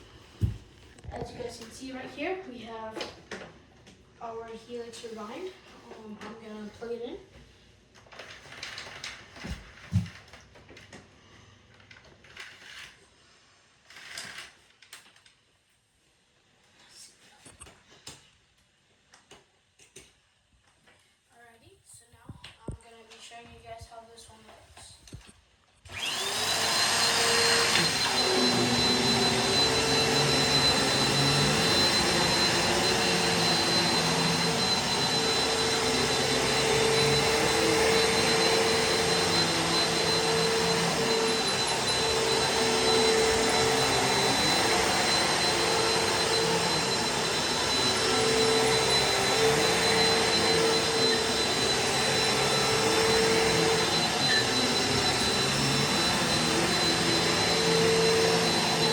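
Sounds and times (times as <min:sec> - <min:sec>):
upright vacuum motor whining: 0:25.9 - 0:58.9.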